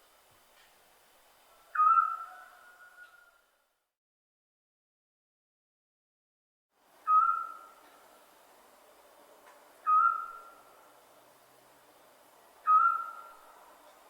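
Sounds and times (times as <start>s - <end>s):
faint background hiss: 0.0s - 3.9s, 6.8s - 14.0s
owl whistled hoot: 1.7s - 3.4s, 7.0s - 7.8s, 9.8s - 10.6s, 12.6s - 13.5s.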